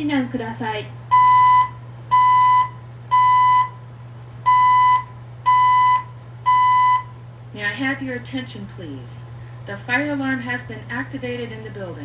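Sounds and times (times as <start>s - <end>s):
fire alarm beeps: 1.1s - 3.8s, 4.5s - 7.1s.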